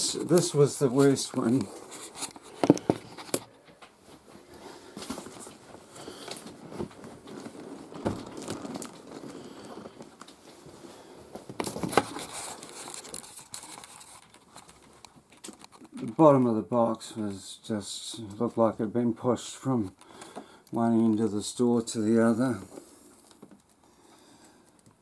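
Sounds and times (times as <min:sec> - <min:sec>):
cardboard rubbing and rustling: 0:05.0 - 0:10.3, 0:11.4 - 0:14.8.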